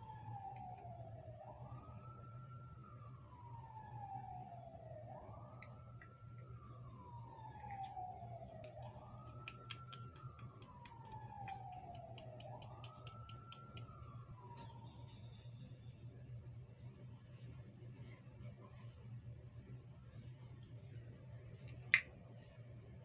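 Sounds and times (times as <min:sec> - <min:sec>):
siren wailing: 0:00.0 - 0:16.0.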